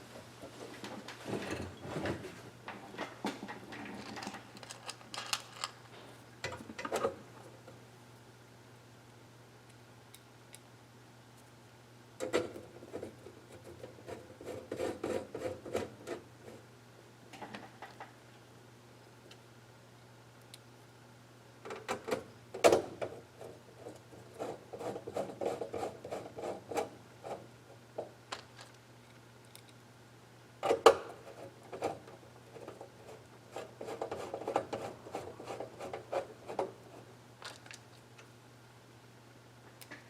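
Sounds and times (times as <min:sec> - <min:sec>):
rubbing and scraping small parts: 0:00.4 - 0:07.5, 0:12.3 - 0:16.7, 0:23.0 - 0:29.8, 0:30.6 - 0:38.3.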